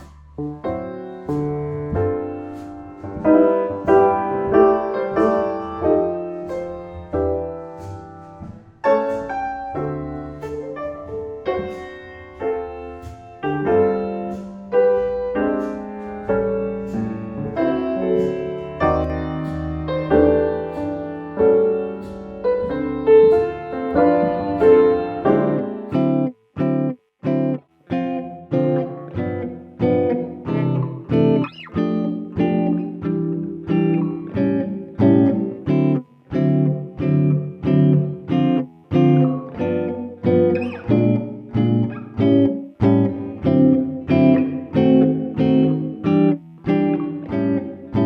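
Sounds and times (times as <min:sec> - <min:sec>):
piano playing slow chords: 0:00.0 - 0:26.9.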